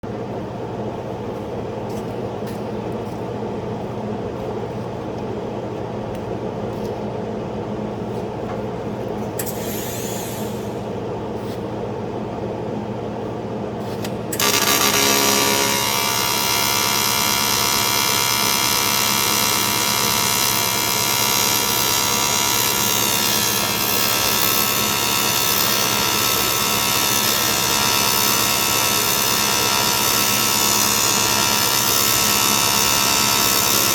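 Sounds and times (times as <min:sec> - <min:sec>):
welding arc buzzing: 0:14.3 - 0:33.9
welding machine humming: 0:14.3 - 0:33.9.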